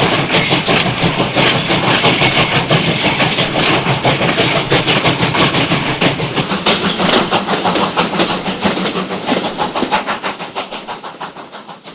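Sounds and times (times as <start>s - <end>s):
steam train chuffing: 0.0s - 11.9s.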